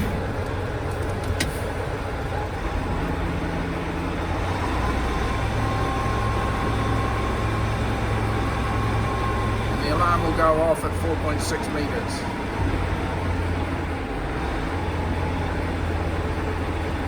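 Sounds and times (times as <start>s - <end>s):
dump truck engine running: 0.0s - 17.0s.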